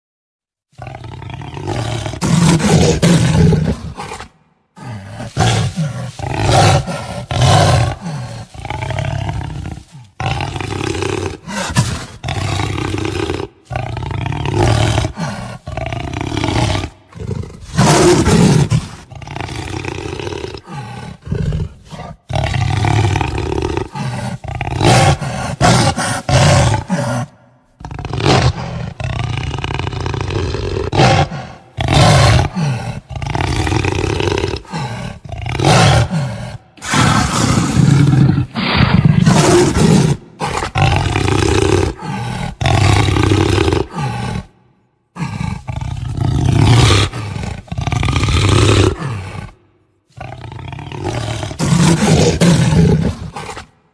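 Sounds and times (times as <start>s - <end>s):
jaguar growling and roaring: 0.8s - 53.8s.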